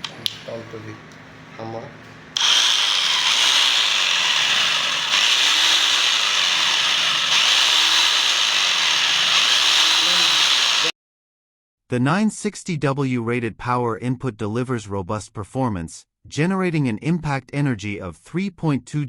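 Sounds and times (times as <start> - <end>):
rotary hammer whirring: 2.4 - 10.9.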